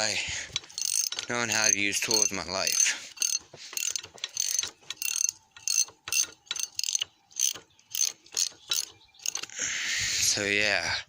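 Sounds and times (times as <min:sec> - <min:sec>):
ratchet wrench clicking: 0:00.5 - 0:09.5.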